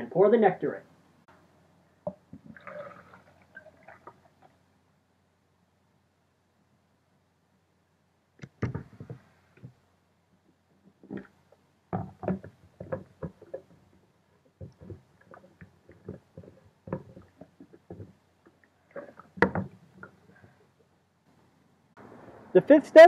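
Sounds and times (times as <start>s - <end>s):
objects knocking and clicking: 8.4s - 9.8s, 10.5s - 20.8s.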